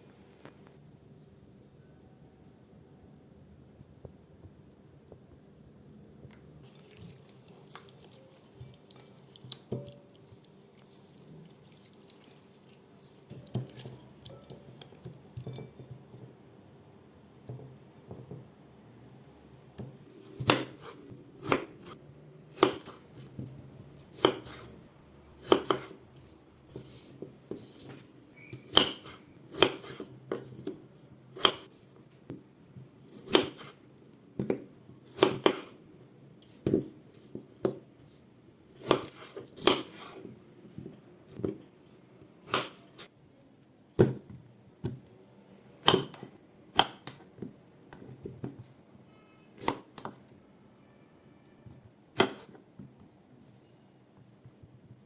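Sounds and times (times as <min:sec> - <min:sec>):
knife chopping on cutting board: 0:19.8 - 0:23.0, 0:24.1 - 0:24.7, 0:25.4 - 0:26.0, 0:28.6 - 0:30.8, 0:31.4 - 0:31.7, 0:33.1 - 0:33.8, 0:34.4 - 0:35.8, 0:38.8 - 0:40.2, 0:42.4 - 0:43.0, 0:45.8 - 0:47.2, 0:49.6 - 0:50.2, 0:52.2 - 0:52.6.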